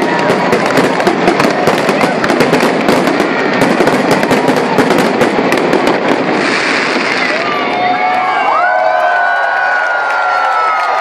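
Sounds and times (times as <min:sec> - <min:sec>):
fireworks bangs and crackling: 0:00.0 - 0:08.6.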